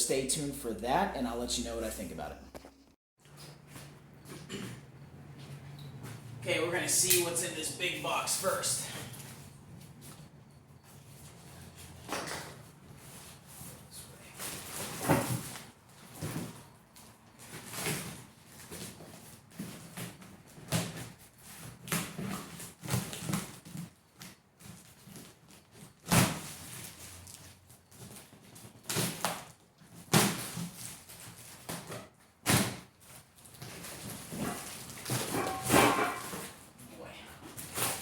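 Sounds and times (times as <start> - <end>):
cardboard rustling and scraping: 10.9 - 36.7, 37.4 - 38.0
sharp knocks of parts shifted: 34.4 - 36.5.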